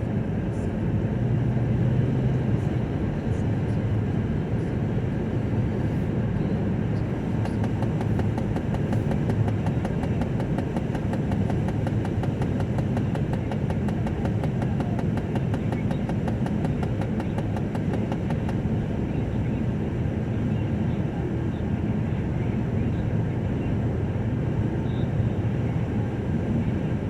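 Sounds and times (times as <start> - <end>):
car engine and tyres rumble: 0.0 - 27.0
faint fast ticking: 7.4 - 18.6.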